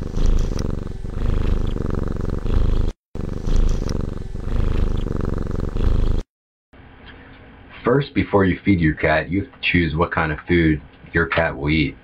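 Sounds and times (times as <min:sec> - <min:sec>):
cat purring: 0:00.0 - 0:06.3.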